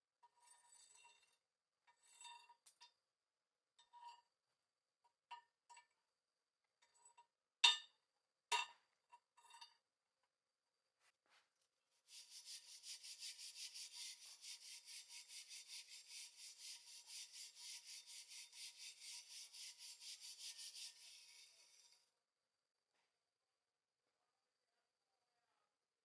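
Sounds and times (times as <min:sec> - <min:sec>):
fast rhythmic scraping: 0:12.1 - 0:22.0.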